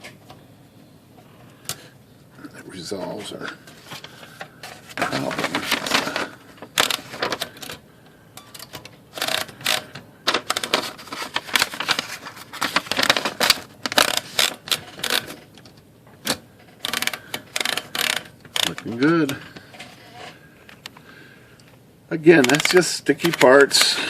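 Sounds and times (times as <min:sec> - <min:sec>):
typewriter ratchet clicking rapidly: 0:09.2 - 0:09.9, 0:16.8 - 0:19.4, 0:22.4 - 0:24.0.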